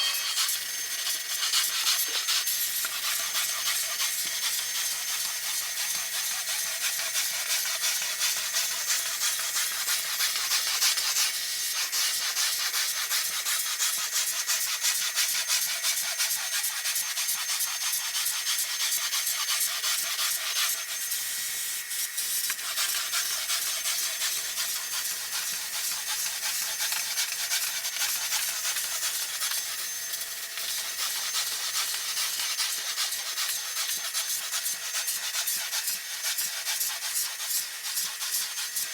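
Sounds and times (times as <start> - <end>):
carpet machine brushing: 0.0 - 5.6.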